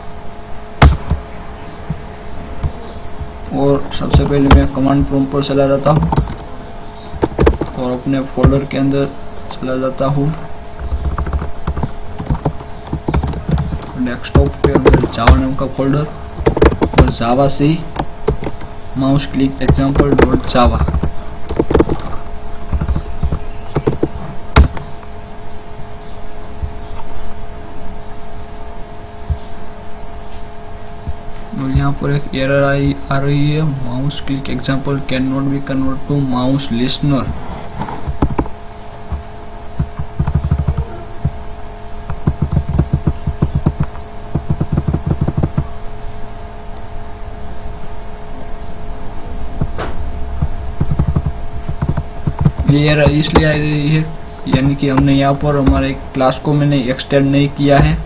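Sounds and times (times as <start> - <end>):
faint steady hum: 0.0 - 58.0
keyboard keystrokes: 5.9 - 6.5, 7.2 - 8.6, 10.3 - 15.5, 19.7 - 24.9, 39.8 - 40.9, 42.1 - 45.7, 49.7 - 53.7.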